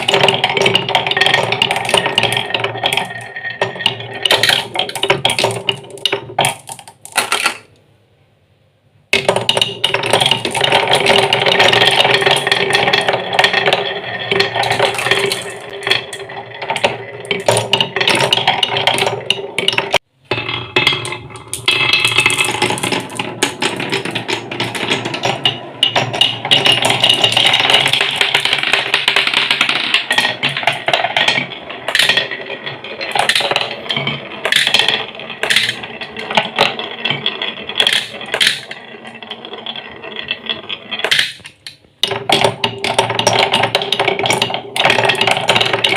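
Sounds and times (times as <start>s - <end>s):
marbles rattling down wooden tracks: 0.0s - 7.7s, 9.2s - 45.9s.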